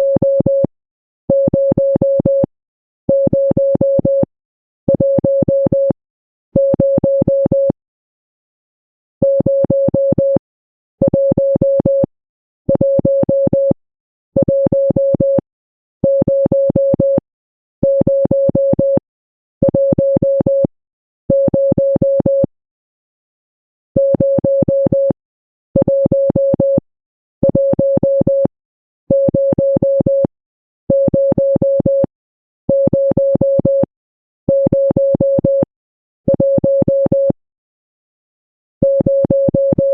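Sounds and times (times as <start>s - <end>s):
morse code beeps: 29.1s - 30.3s, 32.7s - 33.9s, 38.8s - 39.9s.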